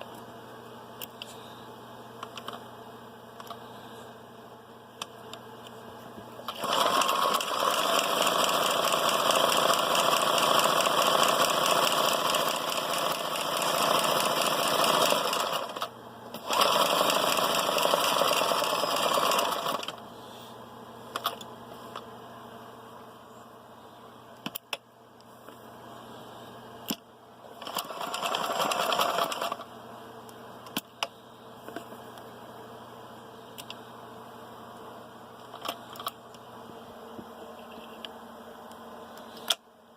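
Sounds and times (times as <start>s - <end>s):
sewing machine running: 6.5s - 20.0s, 27.5s - 29.7s.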